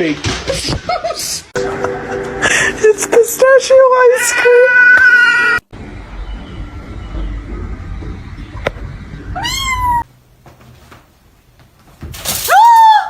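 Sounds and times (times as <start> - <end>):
cat meowing: 9.4 - 10.1.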